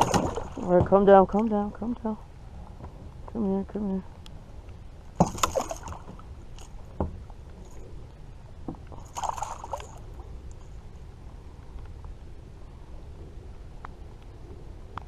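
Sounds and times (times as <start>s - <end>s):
fish splashing and scraping: 0.0s - 1.6s, 5.1s - 8.0s, 8.8s - 10.8s.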